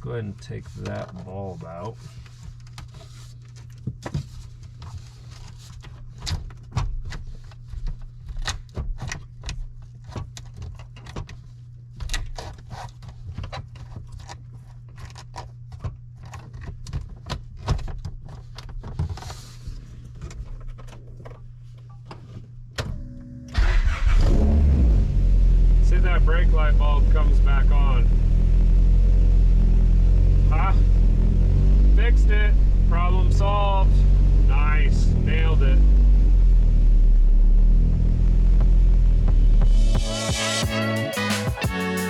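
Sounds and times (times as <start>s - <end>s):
steady low hum: 19.7s - 41.0s
car engine cranking and starting: 22.9s - 40.1s.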